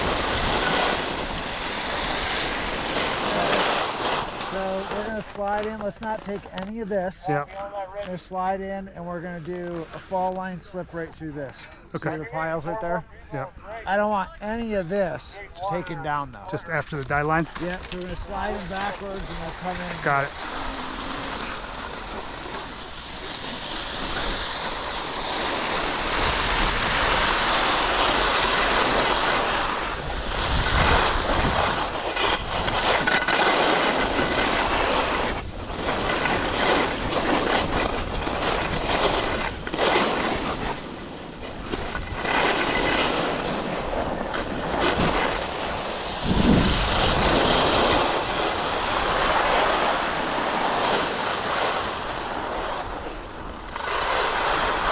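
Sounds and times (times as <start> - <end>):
wind on microphone: 0.0 - 5.0, 17.8 - 54.9
ski edges scraping snow: 0.0 - 54.9.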